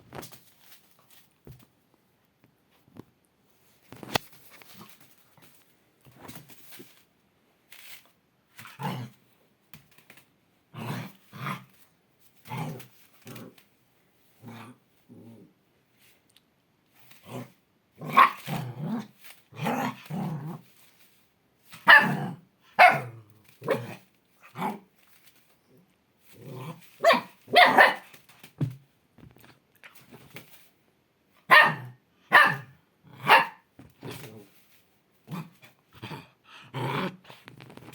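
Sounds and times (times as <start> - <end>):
dog barking: 18.1 - 18.4, 21.8 - 23.9, 27.0 - 28.1, 31.5 - 33.7.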